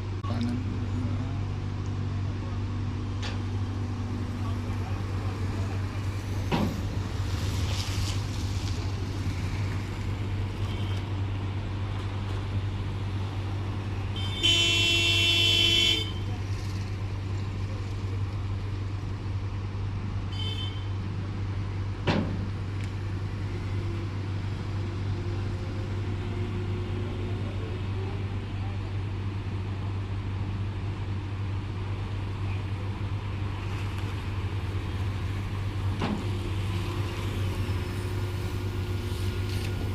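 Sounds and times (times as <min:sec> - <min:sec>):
road traffic engine drone: 0:00.0 - 0:39.9
vehicle horn honking: 0:10.6 - 0:11.1, 0:14.2 - 0:16.3, 0:20.3 - 0:21.0.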